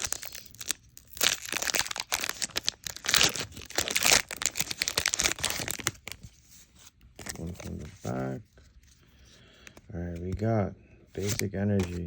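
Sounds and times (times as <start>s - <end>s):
foil wrapper crinkling and tearing: 0.0s - 6.2s.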